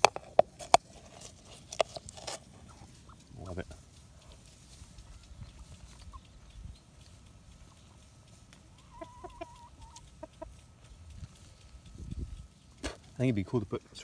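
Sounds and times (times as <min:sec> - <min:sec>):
chicken clucking: 0:01.2 - 0:13.6
chicken trill: 0:02.4 - 0:13.1
wind rumble on microphone: 0:11.0 - 0:12.5.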